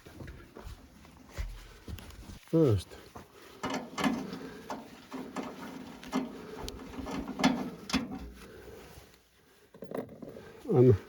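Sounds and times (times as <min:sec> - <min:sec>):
hand tools knocking on metal: 0:03.6 - 0:08.4.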